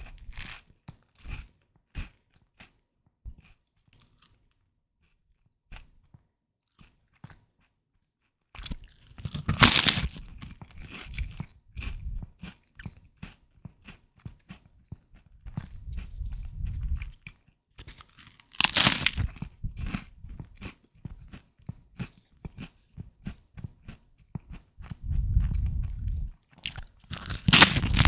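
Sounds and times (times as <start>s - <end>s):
puffed rice crunching: 0.0s - 0.6s, 8.6s - 11.4s, 17.9s - 20.0s, 26.6s - 28.0s.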